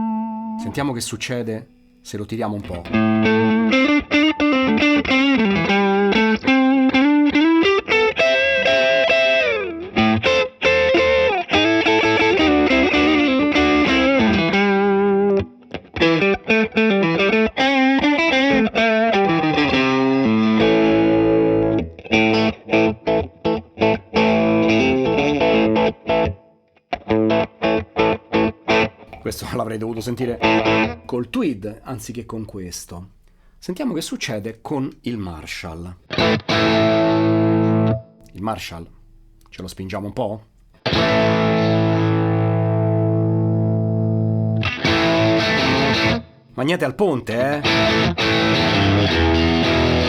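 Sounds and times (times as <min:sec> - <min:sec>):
overdriven electric guitar: 0:00.0 - 0:00.7, 0:02.8 - 0:29.3, 0:30.2 - 0:31.1, 0:36.0 - 0:38.4, 0:40.6 - 0:46.6, 0:47.3 - 0:50.0.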